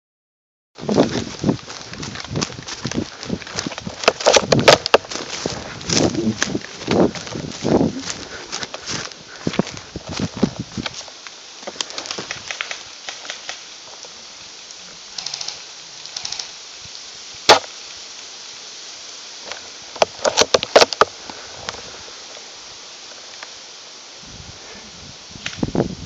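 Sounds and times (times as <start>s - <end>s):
airsoft gun shots: 17.5s - 17.7s.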